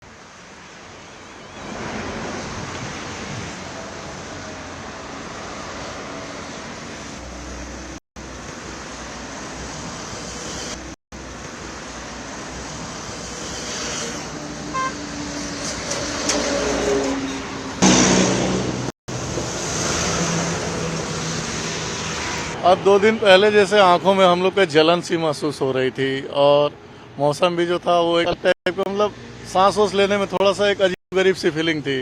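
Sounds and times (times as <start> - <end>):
passing vehicles rushing: 0.2 - 24.4.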